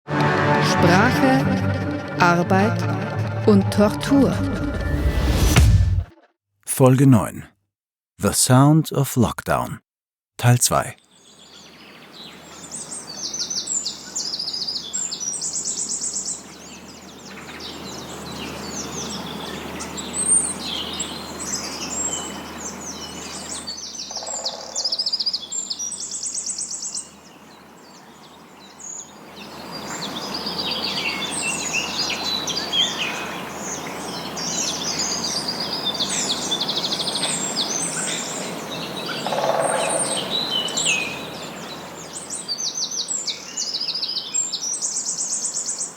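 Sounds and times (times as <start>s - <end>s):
songbirds chirping and trilling: 10.7s - 45.9s.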